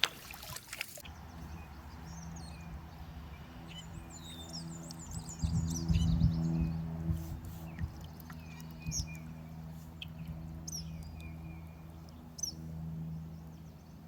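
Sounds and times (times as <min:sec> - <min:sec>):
small birds chirping: 0:01.0 - 0:14.0
lower whistled bird notes: 0:03.7 - 0:06.9.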